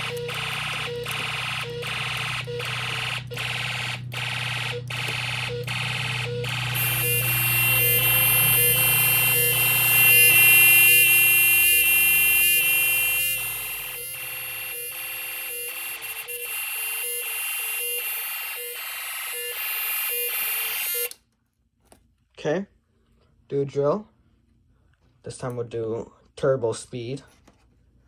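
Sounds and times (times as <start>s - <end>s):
pulsing electronic alarm tone: 0.0s - 21.1s.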